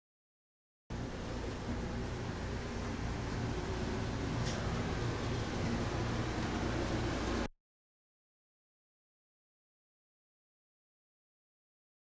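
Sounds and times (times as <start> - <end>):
low hum: 0.9 - 7.5.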